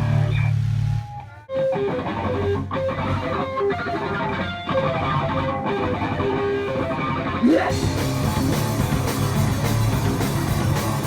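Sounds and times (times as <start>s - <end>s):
electric guitar riff: 0.0s - 11.0s
punk band playing live: 0.0s - 11.0s.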